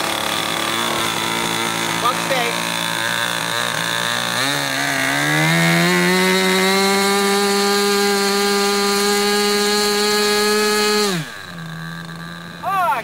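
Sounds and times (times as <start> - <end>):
small engine revving: 0.0 - 13.0.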